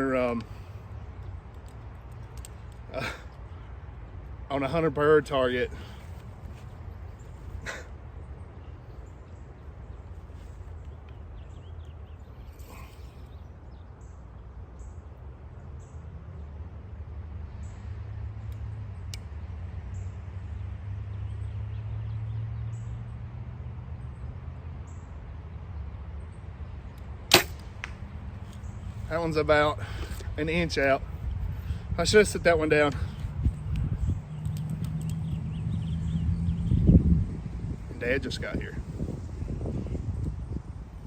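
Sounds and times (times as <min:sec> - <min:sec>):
faint bird chirps: 0:07.1 - 0:15.1
light clicks: 0:33.2 - 0:35.4.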